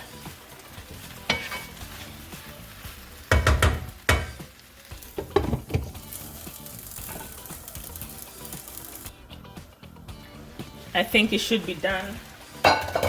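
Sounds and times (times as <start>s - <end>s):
cabbage sizzling in a pan: 0.0s - 13.0s
utensil scraping a pan: 0.9s - 2.2s, 12.6s - 13.0s.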